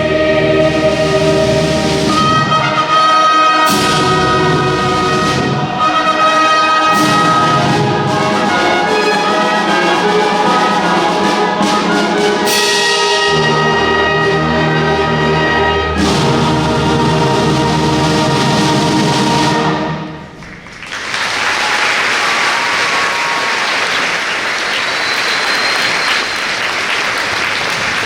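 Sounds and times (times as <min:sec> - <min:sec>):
brass-led orchestral music: 0:00.0 - 0:20.4.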